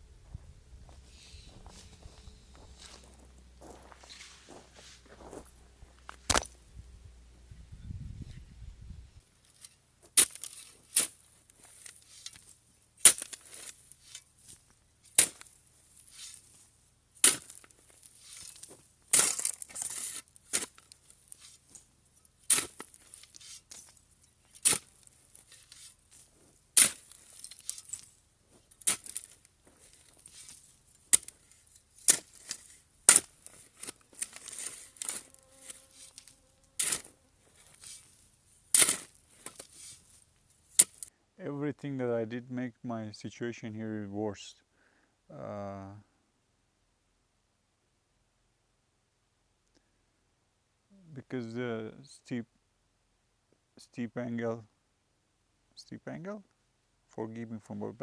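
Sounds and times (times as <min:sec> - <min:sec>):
faint scraping and crunching: 0:00.0 - 0:41.1.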